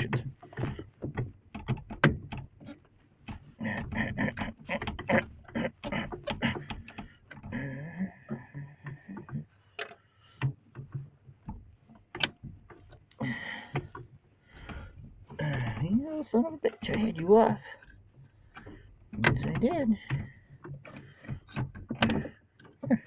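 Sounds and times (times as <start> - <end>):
tool clicks and clanks: 11.8 - 23.0.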